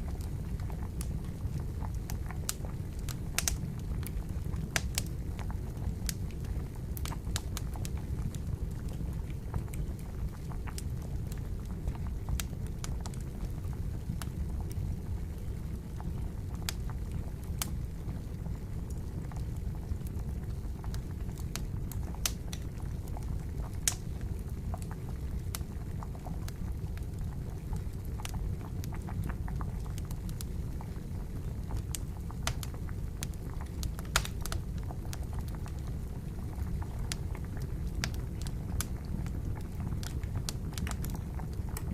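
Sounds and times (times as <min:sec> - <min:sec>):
water boiling: 0:00.0 - 0:41.9
wood fire crackling and popping: 0:00.0 - 0:41.9.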